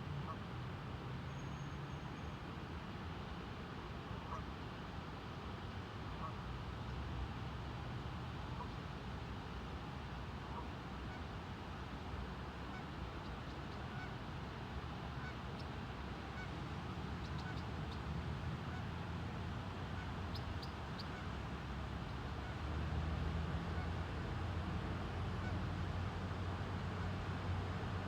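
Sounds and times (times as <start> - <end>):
wind: 0.0 - 28.0
faint waterfowl calls: 4.2 - 4.6, 6.1 - 6.4, 8.5 - 8.8, 12.6 - 14.2, 15.1 - 19.0, 19.8 - 21.4.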